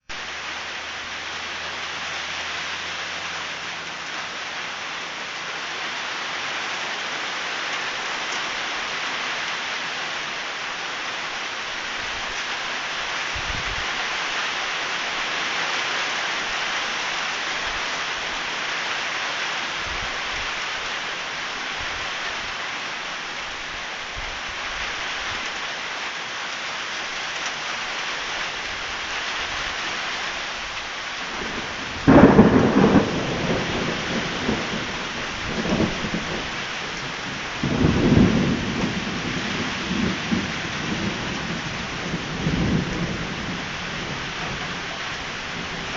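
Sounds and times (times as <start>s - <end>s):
heavy rain hissing: 0.0s - 45.9s
thunderclap rumbling: 31.3s - 45.9s.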